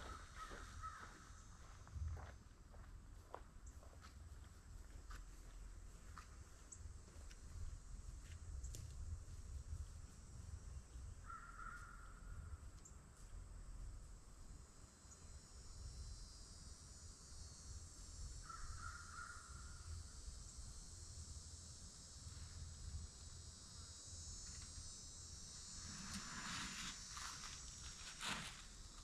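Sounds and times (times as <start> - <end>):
insects chorus: 0.0 - 29.0
rustling: 25.8 - 29.0.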